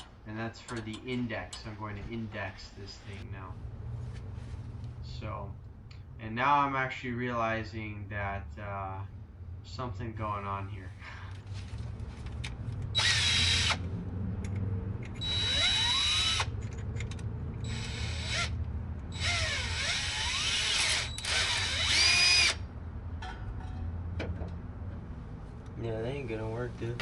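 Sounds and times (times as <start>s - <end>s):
electric drill bursts: 13.0s - 13.8s, 15.2s - 16.5s, 17.6s - 22.6s.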